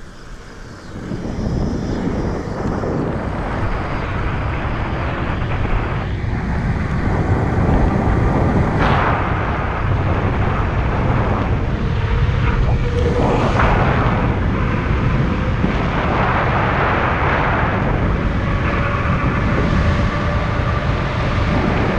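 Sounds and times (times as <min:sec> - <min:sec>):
wind on microphone: 0:00.0 - 0:21.9.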